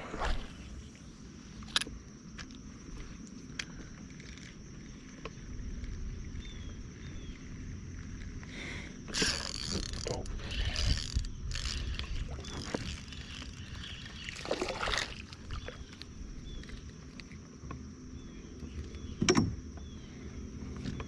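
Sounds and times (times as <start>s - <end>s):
wind rumble on microphone: 5.4s - 14.3s.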